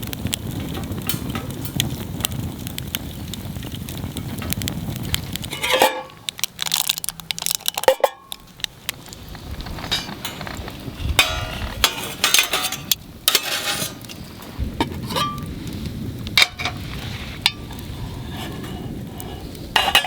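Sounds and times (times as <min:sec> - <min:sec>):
cookware clinking and scraping: 0:05.4 - 0:08.4, 0:09.8 - 0:15.5, 0:16.4 - 0:20.0.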